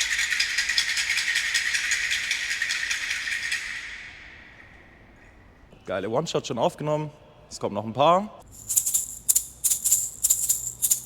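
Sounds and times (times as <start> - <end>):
fast metallic rattling: 0.0 - 4.0, 8.4 - 11.0.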